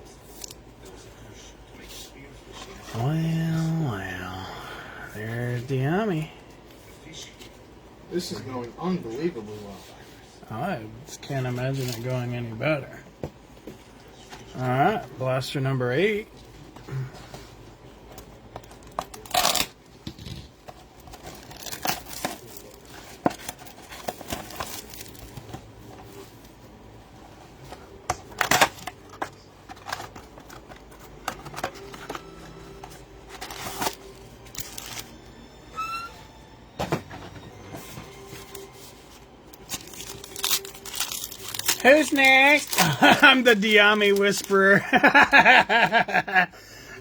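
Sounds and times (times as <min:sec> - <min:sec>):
foil packs tearing and crinkling: 0:19.0 - 0:19.7, 0:21.1 - 0:25.4, 0:33.4 - 0:35.1, 0:39.6 - 0:45.0
cards clicking and rustling: 0:28.0 - 0:35.2, 0:39.6 - 0:45.4.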